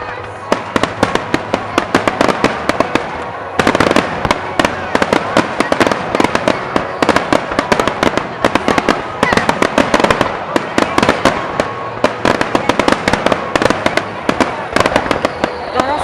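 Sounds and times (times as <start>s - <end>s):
fireworks cracking and banging: 0.0s - 16.0s.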